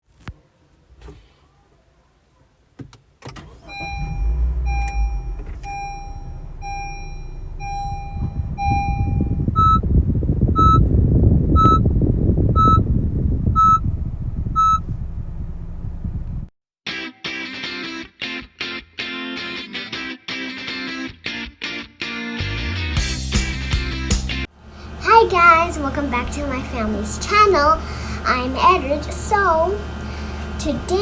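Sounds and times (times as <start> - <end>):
car engine rumble: 3.3 - 16.5
car dashboard warning chimes: 3.4 - 9.8, 10.6 - 10.8, 11.6 - 11.8, 12.6 - 12.8, 13.6 - 13.8, 14.6 - 14.8.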